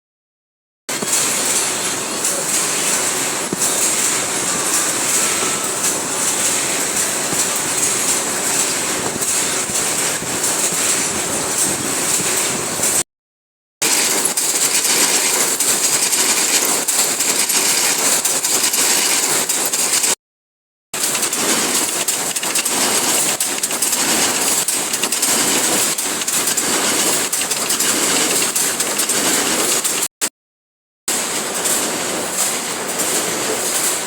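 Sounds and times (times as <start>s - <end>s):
sewing machine running fast: 0.9s - 13.0s, 13.8s - 20.2s, 21.0s - 30.3s.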